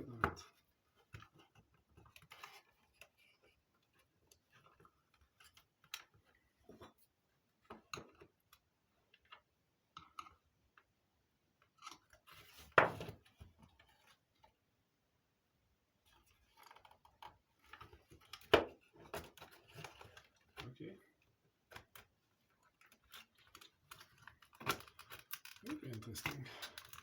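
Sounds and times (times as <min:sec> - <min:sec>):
clicks of plastic parts handled: 0:21.7 - 0:27.0.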